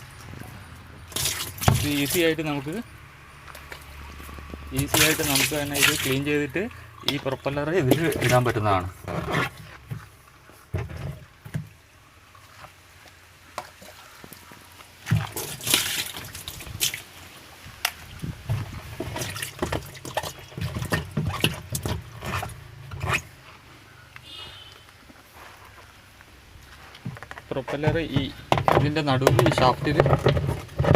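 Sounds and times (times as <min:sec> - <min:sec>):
water splashing in washing machine tub: 0:01.1 - 0:02.4, 0:04.7 - 0:06.4, 0:07.8 - 0:08.8, 0:15.0 - 0:17.2, 0:18.9 - 0:22.5
knocks and scrapes of handling: 0:07.1 - 0:11.7, 0:18.3 - 0:23.7, 0:26.7 - 0:30.9.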